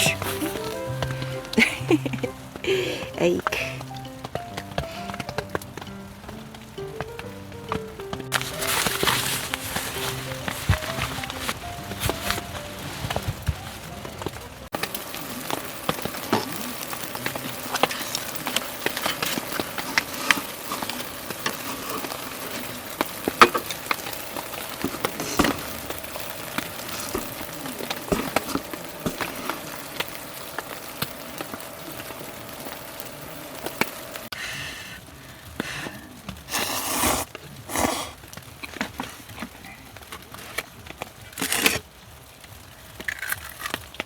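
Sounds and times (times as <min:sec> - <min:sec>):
short rustling bursts: 0:00.0 - 0:01.6, 0:07.9 - 0:15.4
drips clicking: 0:00.0 - 0:34.2
rain pattering on tent fabric: 0:00.0 - 0:44.0.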